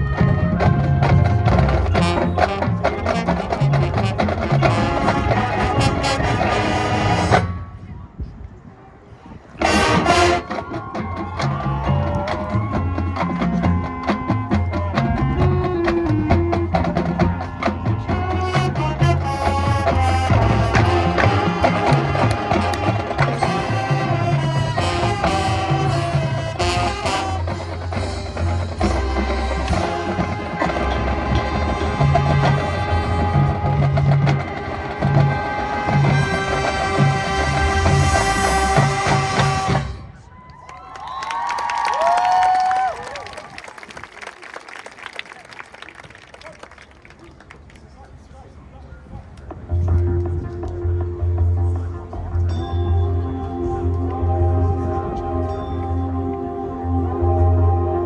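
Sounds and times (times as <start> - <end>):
marching band playing: 0.0 - 7.7, 9.6 - 40.2, 49.6 - 58.0
brass and wind chords: 0.0 - 8.2, 8.8 - 10.8, 15.0 - 40.2, 49.7 - 58.0
drum and percussion hits: 9.6 - 40.0.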